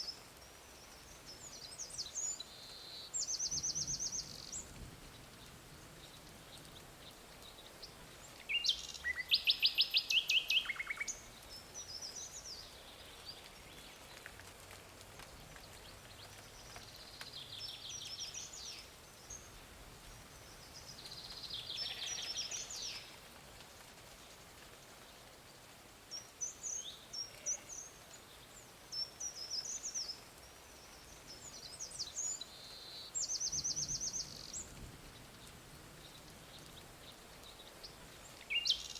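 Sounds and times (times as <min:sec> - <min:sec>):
faint background hiss: 0:00.0 - 0:38.9
songbirds trilling: 0:20.6 - 0:23.2.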